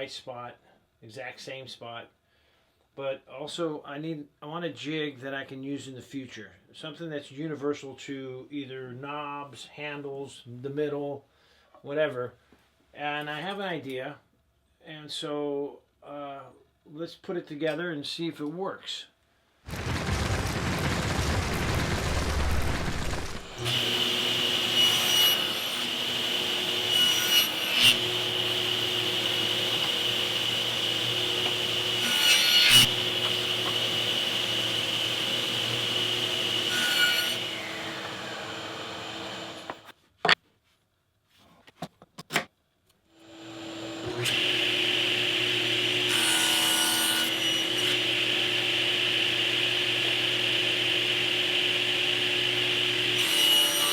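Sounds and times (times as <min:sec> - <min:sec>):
table saw cutting wood: 0:22.9 - 0:39.9, 0:43.2 - 0:53.9.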